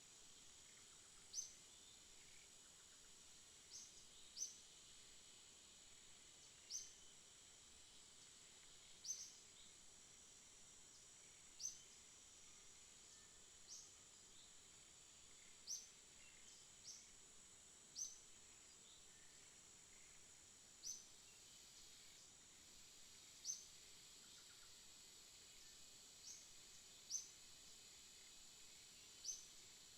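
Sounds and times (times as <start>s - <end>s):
faint steady hiss: 0.0s - 29.9s
small bird chirping: 0.4s - 4.6s, 9.0s - 9.8s, 15.4s - 17.2s, 17.9s - 19.1s, 20.8s - 21.4s, 23.4s - 24.8s, 26.2s - 27.4s, 28.9s - 29.7s.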